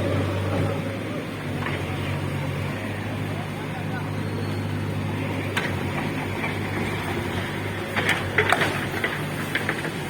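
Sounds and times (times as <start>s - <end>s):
low engine hum: 0.0s - 10.0s
sharp clattering knocks: 7.9s - 10.0s.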